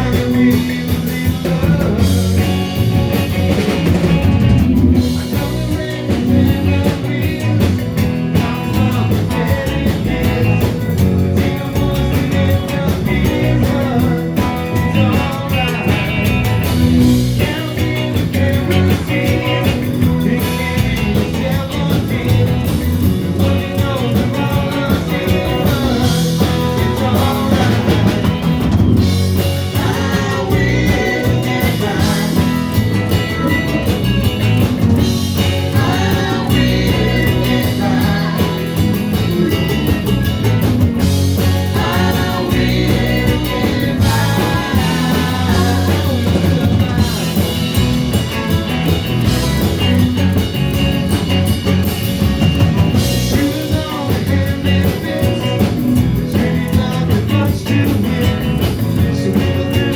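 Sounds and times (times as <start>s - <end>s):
person singing: 0.0s - 51.8s, 52.9s - 59.9s
rock band playing: 0.0s - 59.9s.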